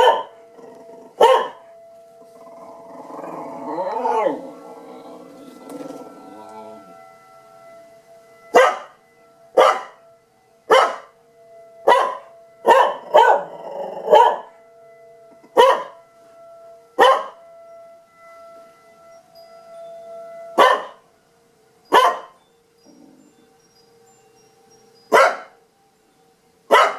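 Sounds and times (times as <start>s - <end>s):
dog barking: 0.0s - 0.3s, 1.2s - 1.7s, 8.6s - 8.9s, 9.6s - 10.0s, 10.7s - 11.1s, 11.9s - 14.5s, 15.6s - 16.0s, 17.0s - 17.4s, 20.6s - 21.0s, 21.9s - 22.4s, 25.1s - 25.6s
faint warning siren tone: 0.0s - 26.9s.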